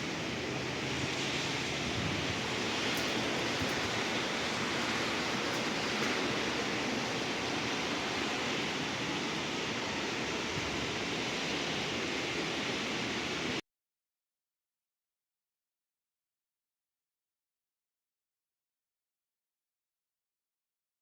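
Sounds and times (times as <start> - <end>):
steady rain hiss: 0.0 - 13.6.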